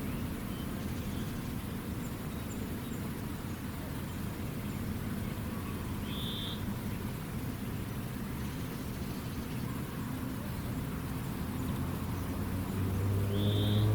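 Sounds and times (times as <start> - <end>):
faint high bird chirps: 13.3 - 13.9.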